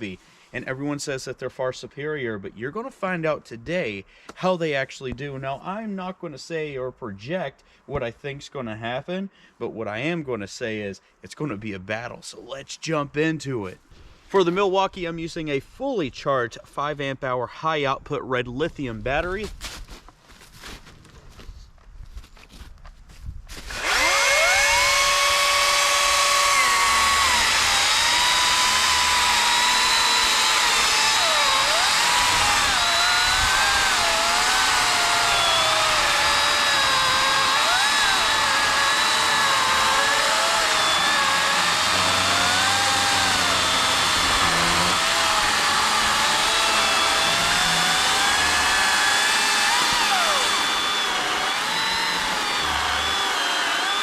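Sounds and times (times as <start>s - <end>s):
chainsaw cutting wood: 23.5s - 54.0s.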